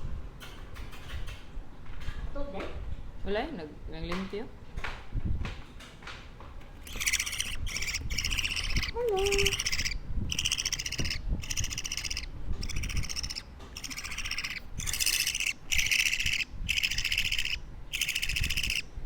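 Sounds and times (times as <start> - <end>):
bird chick cheeping: 6.8 - 18.9.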